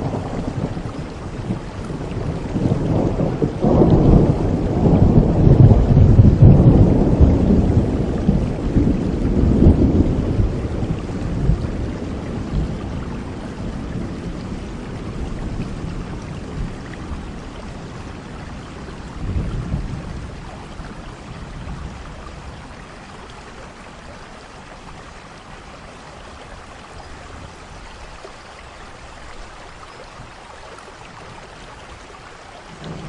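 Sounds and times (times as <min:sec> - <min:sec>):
thunder rumbling: 0:00.0 - 0:22.9, 0:32.8 - 0:33.0
steady rain: 0:00.0 - 0:33.0.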